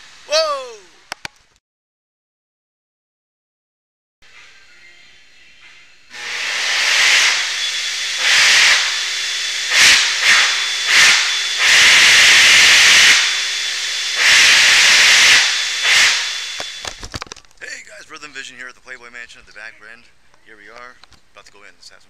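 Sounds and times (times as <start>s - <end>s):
loud hissing bursts: 0.0s - 1.0s, 6.1s - 17.0s
faint steady high tone: 4.3s - 6.0s.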